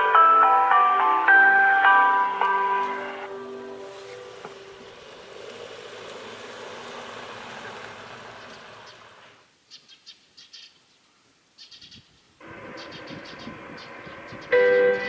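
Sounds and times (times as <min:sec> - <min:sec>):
loudspeaker chime melody: 0:00.0 - 0:04.3, 0:14.5 - 0:15.0
high bird chirps: 0:09.7 - 0:11.0, 0:11.6 - 0:15.0.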